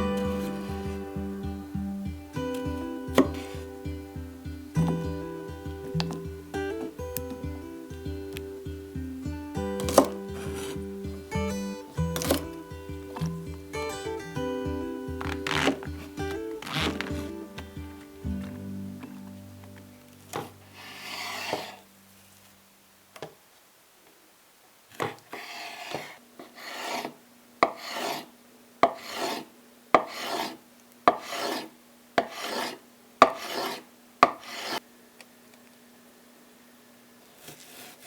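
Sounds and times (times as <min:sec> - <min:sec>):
scraping strokes on hard surface: 0:00.0 - 0:01.3, 0:03.1 - 0:03.7, 0:09.9 - 0:10.9, 0:20.3 - 0:21.8, 0:25.0 - 0:34.8, 0:37.3 - 0:38.0.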